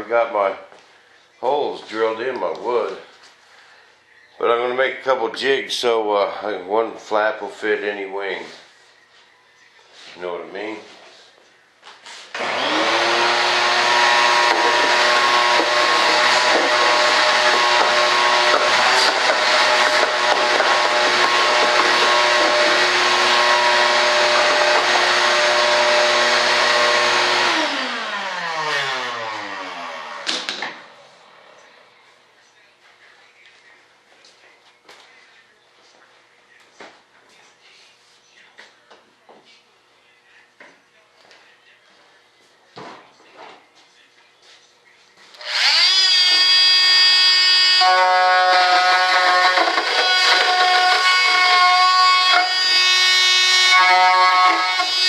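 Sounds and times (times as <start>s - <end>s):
electric power tool winding down: 12.3s - 31.0s, 45.4s - 55.0s.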